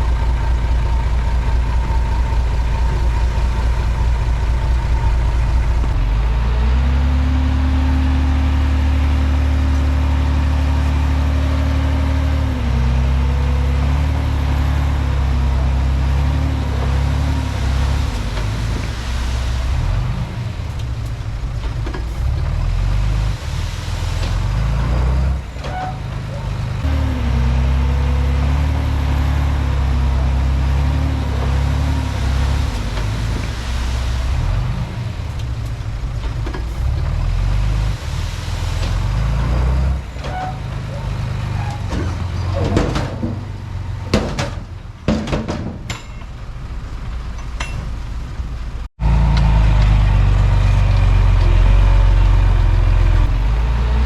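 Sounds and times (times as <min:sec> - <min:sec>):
bulldozer diesel engine revving: 0:00.0 - 0:45.1, 0:48.2 - 0:54.0.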